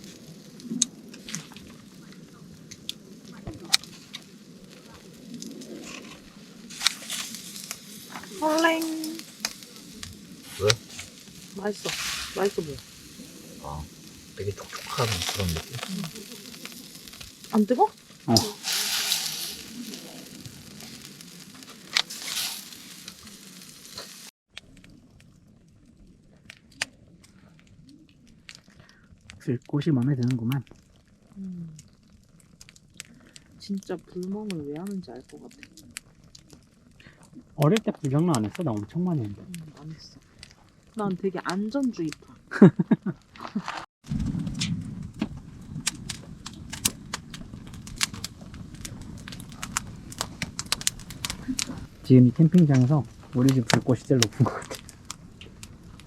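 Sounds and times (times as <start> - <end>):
campfire crackling and popping: 0.0 - 56.0
meat sizzling over fire: 0.0 - 56.0
low rumble: 44.0 - 56.0.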